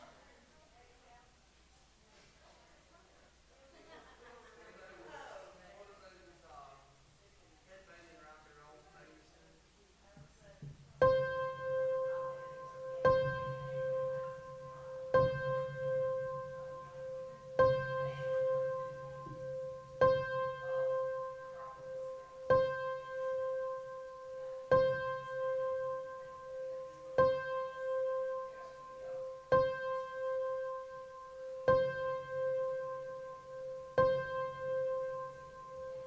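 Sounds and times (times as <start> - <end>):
slow piano chord ringing: 11.0 - 36.0.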